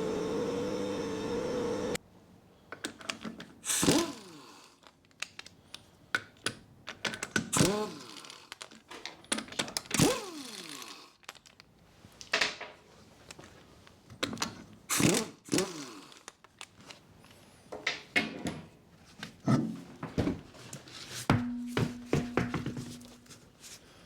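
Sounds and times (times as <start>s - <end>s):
metal knocks and clanks: 21.3s - 23.4s.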